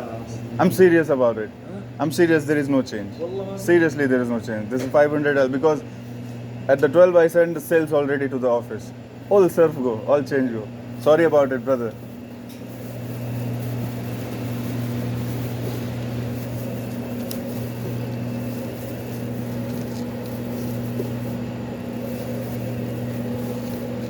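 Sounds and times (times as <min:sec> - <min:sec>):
low electrical hum: 0:00.0 - 0:24.0.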